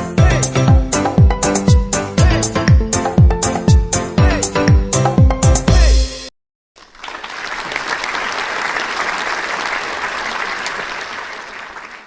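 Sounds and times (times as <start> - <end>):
background music: 0.0 - 6.3
crowd applause: 6.8 - 12.0.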